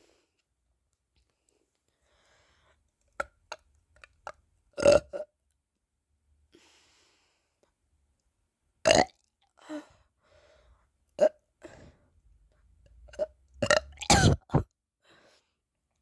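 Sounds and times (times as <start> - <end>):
person burping: 8.9 - 9.1, 13.6 - 14.6.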